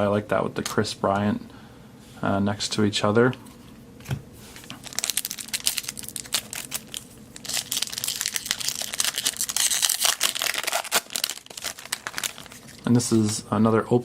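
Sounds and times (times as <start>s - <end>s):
wrapper crinkling and tearing: 4.6s - 13.0s.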